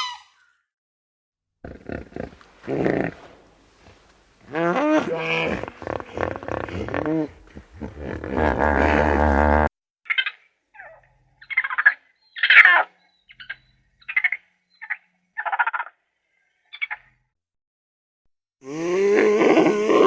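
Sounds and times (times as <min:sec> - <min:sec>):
long wavering animal call: 0:18.6 - 0:20.0.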